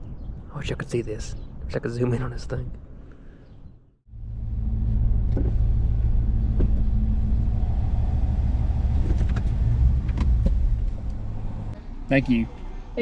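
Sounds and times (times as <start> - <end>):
car engine rumbling: 4.1 - 13.0.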